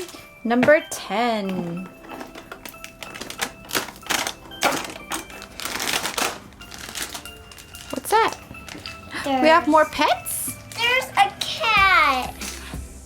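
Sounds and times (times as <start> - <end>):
plastic bag crinkling: 1.6 - 9.7.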